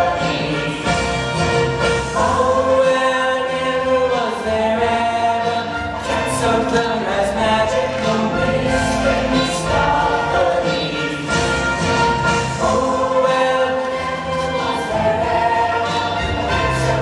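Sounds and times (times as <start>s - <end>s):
choir singing long held notes: 5.8s - 17.0s.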